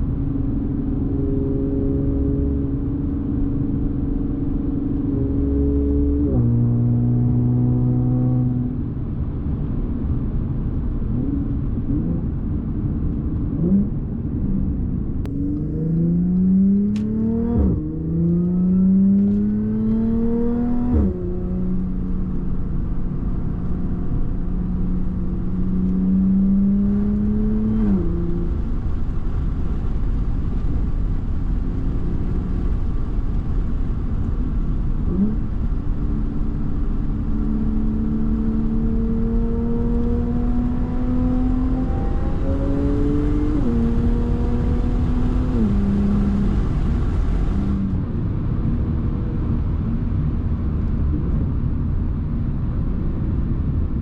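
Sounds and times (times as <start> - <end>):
car engine accelerating: 0.0 - 52.8
road rumble: 0.0 - 54.0.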